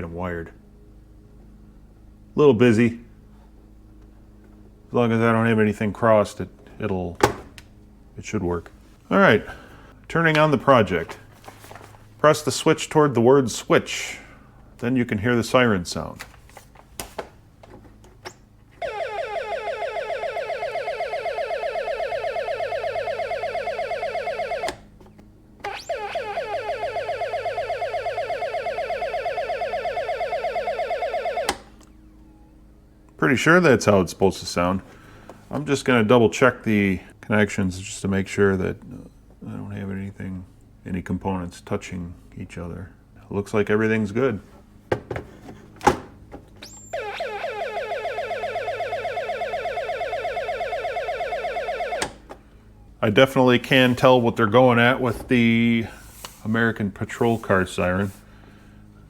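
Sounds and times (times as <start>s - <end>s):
electronic siren warble: 18.8s - 24.9s, 25.6s - 32.7s, 46.6s - 53.2s
rising electronic chirp: 46.6s - 51.9s.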